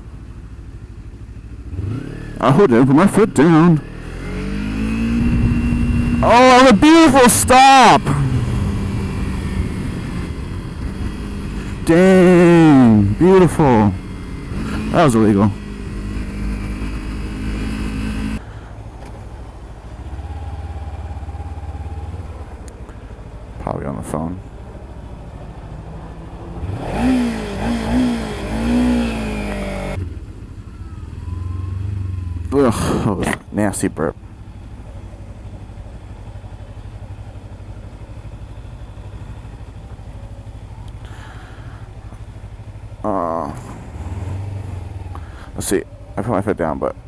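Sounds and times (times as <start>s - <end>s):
motorcycle engine idling: 0.0s - 47.0s
wind noise on microphone: 4.9s - 6.2s.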